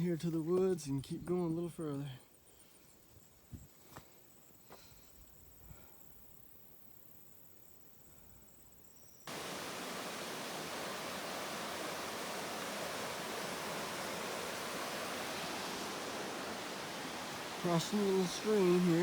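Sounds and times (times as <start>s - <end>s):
faint high insect buzz: 2.5s - 19.0s
stream water rushing: 9.3s - 19.0s.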